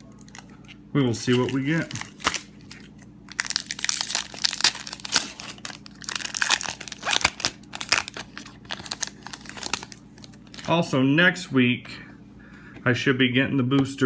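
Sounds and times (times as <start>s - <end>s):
foil wrappers crinkling: 0.0s - 10.7s.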